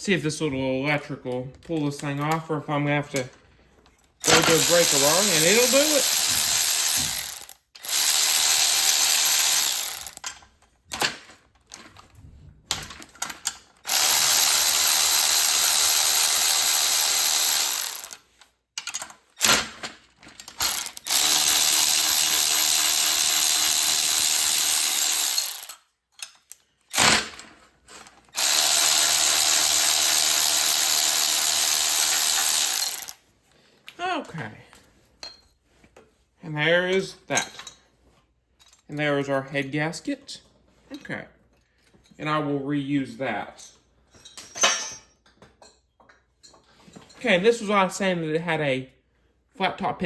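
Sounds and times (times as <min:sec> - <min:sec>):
electric wrench running: 0:04.2 - 0:10.2, 0:13.8 - 0:18.4, 0:20.5 - 0:25.8, 0:26.9 - 0:27.4, 0:28.4 - 0:33.2.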